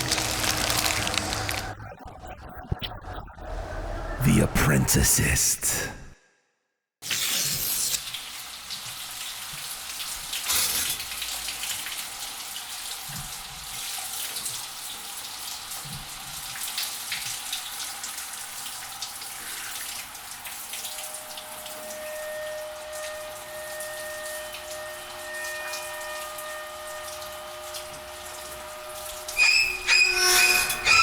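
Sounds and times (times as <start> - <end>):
shower water running: 0.0 - 1.7, 7.5 - 30.1.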